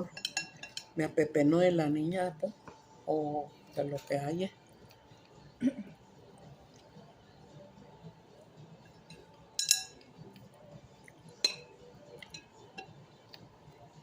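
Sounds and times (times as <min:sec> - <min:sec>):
spoon clinking against dish: 0:00.0 - 0:01.0, 0:09.0 - 0:10.1, 0:11.3 - 0:13.0.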